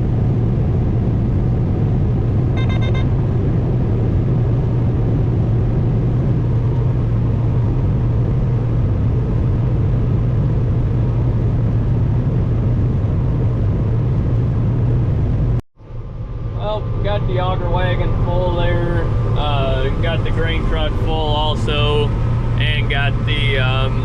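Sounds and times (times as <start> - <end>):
combine harvester engine drone: 0.0 - 24.0.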